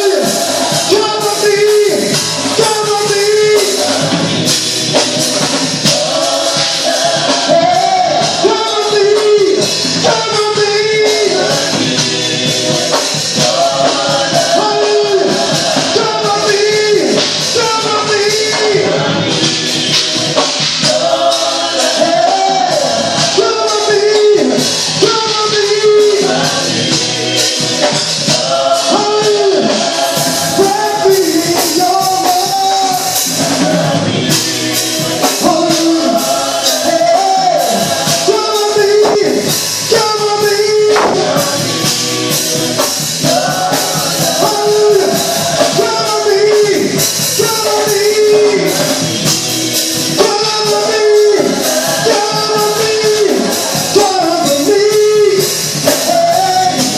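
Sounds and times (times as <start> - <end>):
percussion strikes: 0.0 - 18.8, 34.3 - 54.8
group singing gospel song: 0.0 - 56.9
instrumental backing: 0.0 - 56.9.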